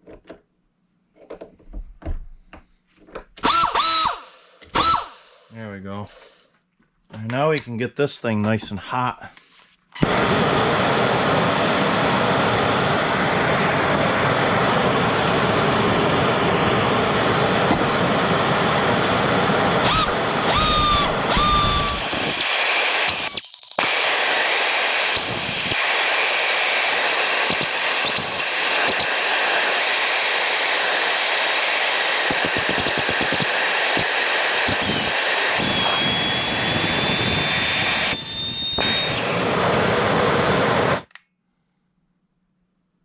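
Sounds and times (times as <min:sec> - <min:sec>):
pneumatic grinder air motor running: 0:03.4 - 0:05.5, 0:10.0 - 0:41.0
short squealing whistles: 0:19.8 - 0:23.4.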